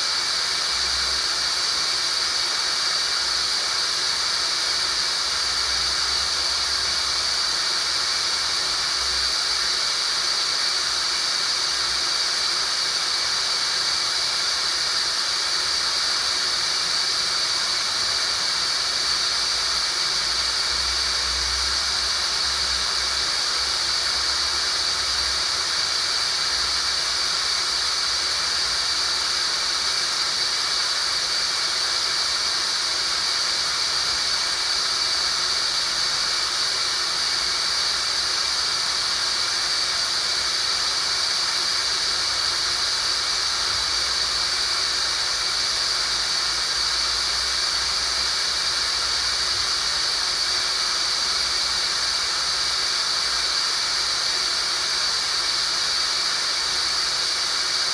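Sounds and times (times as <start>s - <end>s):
steady hiss: 0.0s - 57.9s.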